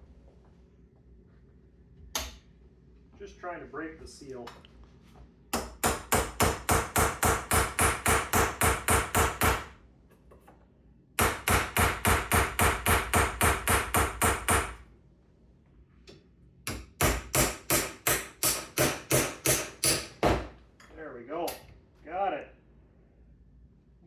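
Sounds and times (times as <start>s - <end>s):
hammer striking metal pry bar: 5.6s - 9.7s, 11.2s - 14.8s, 16.7s - 20.4s.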